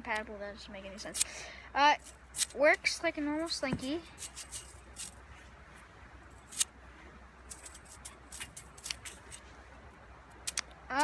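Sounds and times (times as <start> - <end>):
metal spring toy clicking: 2.0 - 5.2, 7.5 - 9.4, 10.4 - 11.0.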